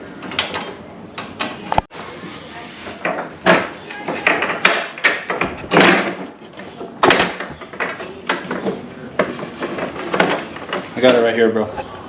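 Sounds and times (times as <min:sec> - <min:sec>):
metal parts scraping: 0:05.3 - 0:08.0.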